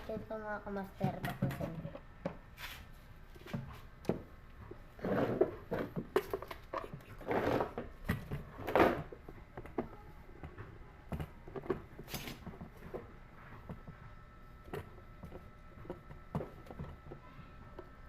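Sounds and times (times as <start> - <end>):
scraping and knocking: 5.0 - 9.9.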